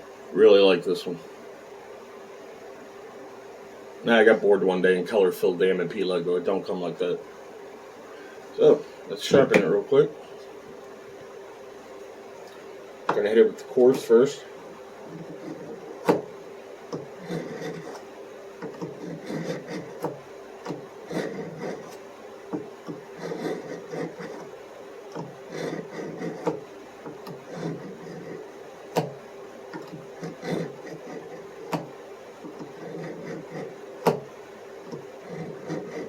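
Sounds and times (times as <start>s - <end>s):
knife scraping on sharpener: 17.2s - 18.0s, 18.7s - 20.1s, 21.1s - 22.0s, 22.9s - 24.5s, 25.2s - 26.6s, 27.3s - 28.4s, 29.8s - 31.5s, 32.5s - 33.8s, 35.2s - 36.0s.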